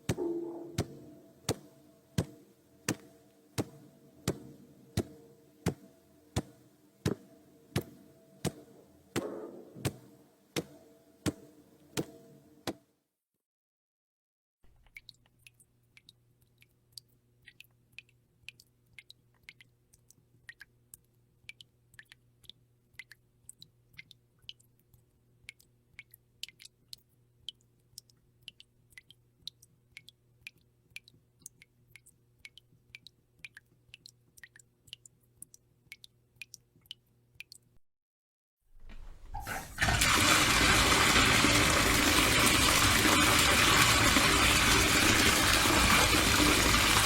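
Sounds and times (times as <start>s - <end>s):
water drops dripping: 0.0s - 10.0s, 14.8s - 37.7s.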